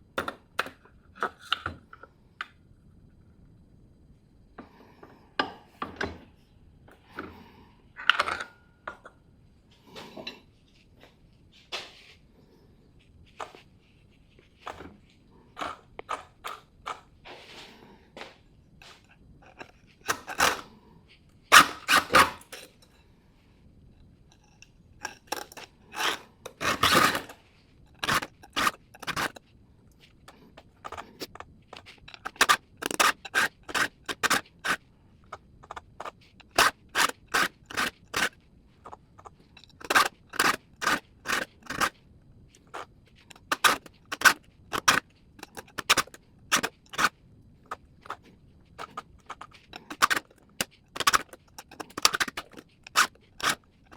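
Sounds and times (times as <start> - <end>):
file rasping on chainsaw chain: 20.1 - 20.7, 21.5 - 22.7, 25.0 - 27.3, 27.9 - 29.4, 32.0 - 34.8, 35.6 - 38.4, 39.6 - 41.9, 42.8 - 47.1, 48.8 - 53.9.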